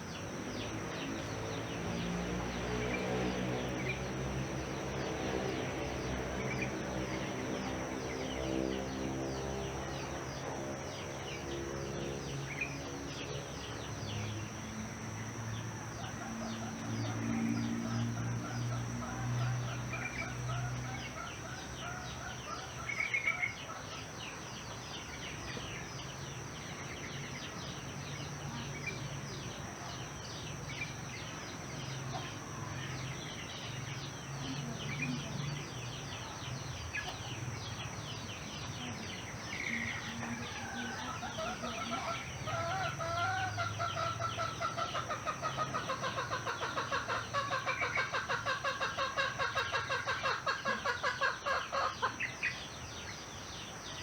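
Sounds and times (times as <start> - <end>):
small birds chirping: 0.0 - 54.0
chickens clucking: 38.7 - 52.7.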